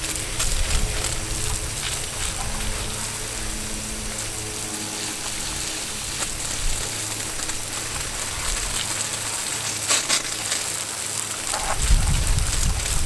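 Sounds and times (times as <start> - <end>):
garden hose spraying water: 0.0 - 13.0.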